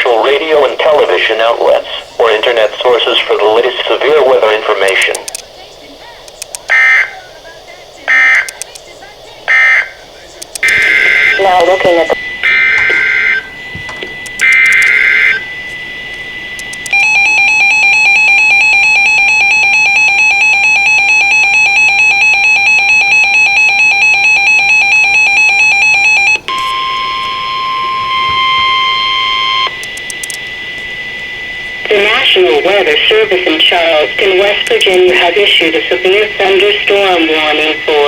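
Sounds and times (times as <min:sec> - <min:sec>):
harsh digital data buzzing: 0:00.0 - 0:38.0
steady warning alarm tone: 0:00.0 - 0:38.0
pulsing attention tone: 0:10.6 - 0:38.0.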